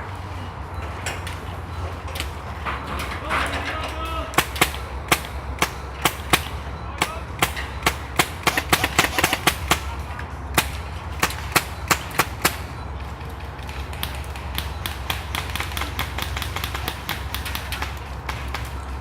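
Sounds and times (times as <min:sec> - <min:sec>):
airsoft gunshots: 0:04.3 - 0:10.0.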